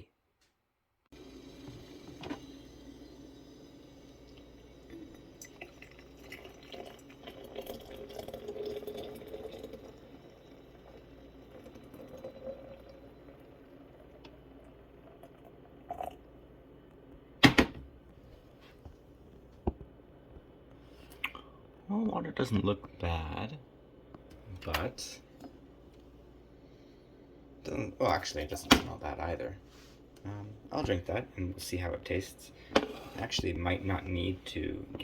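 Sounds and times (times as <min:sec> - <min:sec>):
water pouring from kettle: 0:01.2 - 0:16.2.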